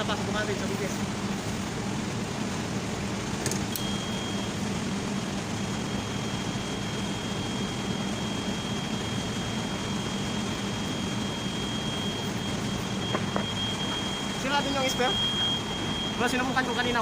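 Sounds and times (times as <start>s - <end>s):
machinery humming: 0.0s - 17.0s
thin high whine: 3.6s - 17.0s.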